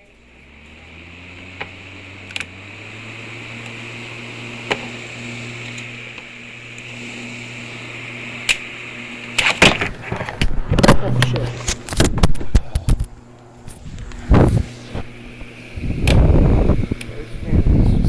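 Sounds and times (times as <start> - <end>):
table fan running: 0.0 - 18.0
sharp clicks: 1.4 - 2.6, 8.4 - 14.4, 16.0 - 17.2.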